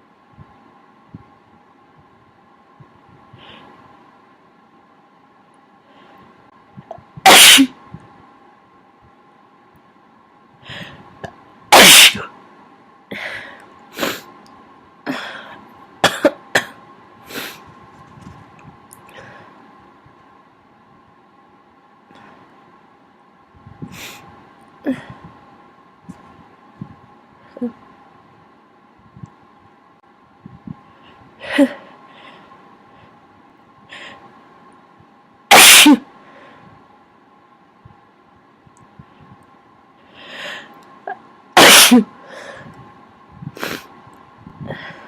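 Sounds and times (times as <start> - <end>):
person coughing: 7.3 - 7.7, 16.0 - 16.8, 41.6 - 42.1
person sneezing: 7.3 - 7.7, 11.7 - 12.3, 35.5 - 36.0, 41.6 - 42.1
person sniffing: 43.6 - 43.9.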